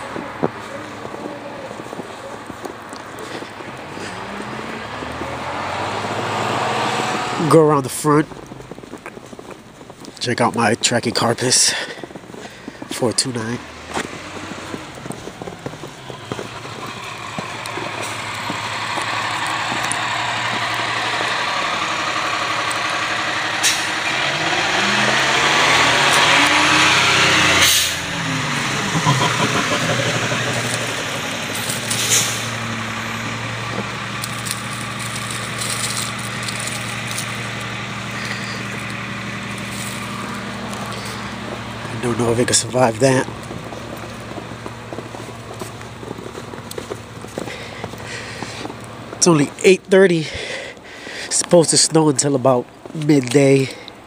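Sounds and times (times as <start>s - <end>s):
vehicle driving past: 0.0s - 9.0s, 11.5s - 51.5s
low engine hum: 0.0s - 54.0s.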